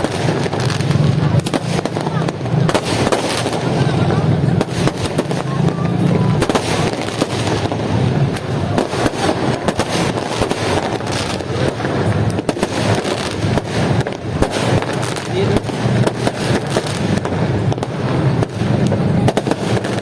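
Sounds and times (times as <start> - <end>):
fireworks crackling and banging: 0.0 - 20.0.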